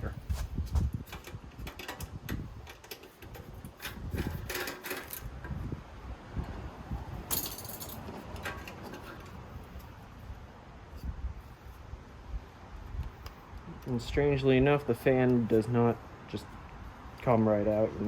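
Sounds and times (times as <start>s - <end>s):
wind rumble on microphone: 0.0s - 18.0s
metallic clicks and clinks: 7.3s - 9.9s.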